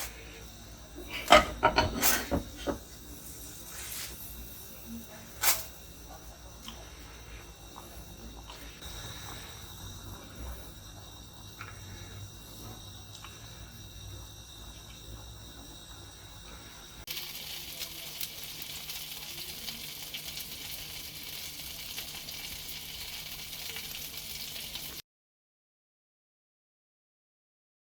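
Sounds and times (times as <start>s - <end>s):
steady low hum: 0.0s - 20.5s
food sizzling in a pan: 1.1s - 5.9s, 17.0s - 25.0s.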